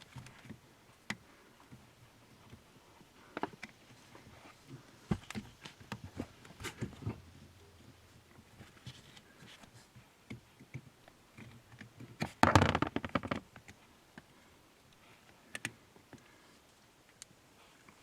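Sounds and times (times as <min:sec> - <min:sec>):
rubber rubbing and scraping: 0:12.2 - 0:13.4.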